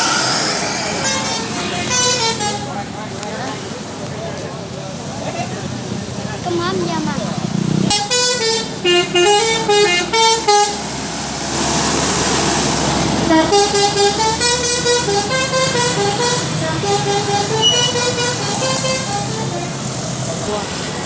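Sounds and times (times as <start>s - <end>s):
hiss of noise: 0.0s - 2.7s
bus musical horn tune: 0.0s - 3.1s, 7.9s - 11.1s, 13.2s - 19.7s.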